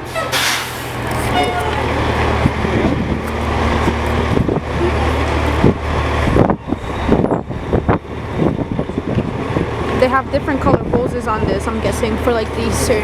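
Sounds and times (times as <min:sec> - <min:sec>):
fire truck engine running: 0:00.0 - 0:13.0.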